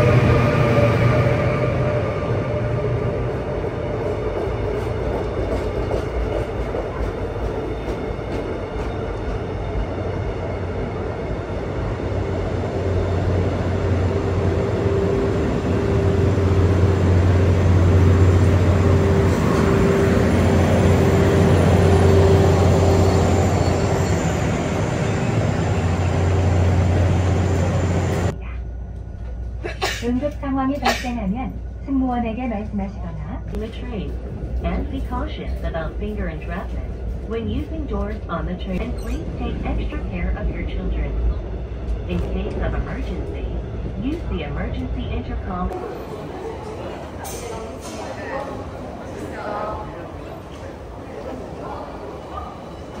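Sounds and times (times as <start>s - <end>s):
train wheels rumbling: 0.0s - 53.0s.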